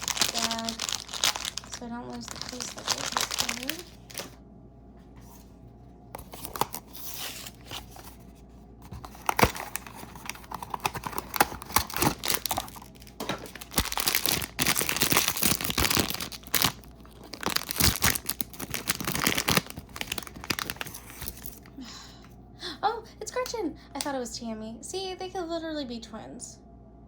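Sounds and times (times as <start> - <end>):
bag ripping and crinkling: 0.0 - 4.4, 6.2 - 8.2, 8.9 - 21.7
cardboard box tearing: 6.2 - 8.2, 8.9 - 21.6.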